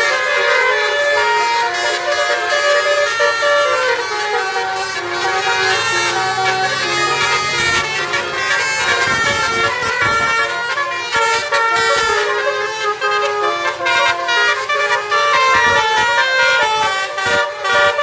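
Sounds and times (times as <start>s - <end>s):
car horn playing a tune: 0.0s - 18.0s.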